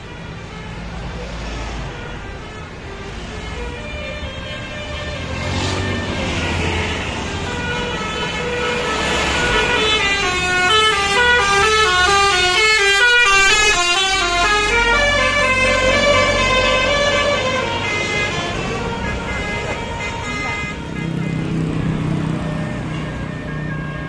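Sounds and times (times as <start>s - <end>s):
low bus engine rumble: 1.9s - 24.0s
multi-tone musical air horn: 4.6s - 21.8s.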